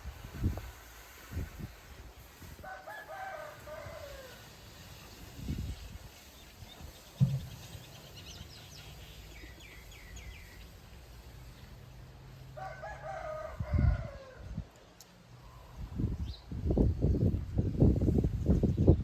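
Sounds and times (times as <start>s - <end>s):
rooster crowing: 2.6s - 4.4s, 12.6s - 14.5s
small birds chirping: 5.8s - 11.8s
low thumps: 7.2s - 7.9s.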